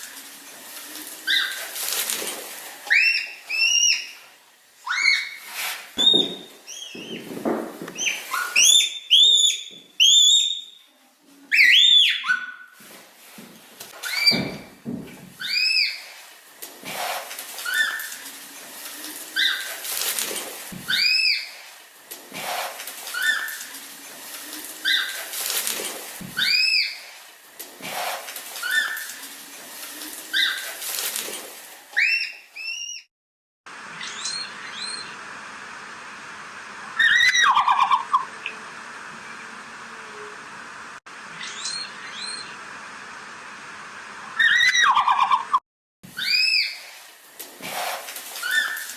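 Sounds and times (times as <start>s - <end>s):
steady hiss: 0.0s - 8.8s, 12.8s - 32.0s, 33.7s - 44.4s, 46.1s - 48.9s
red panda squeaky chirps: 8.0s - 10.8s.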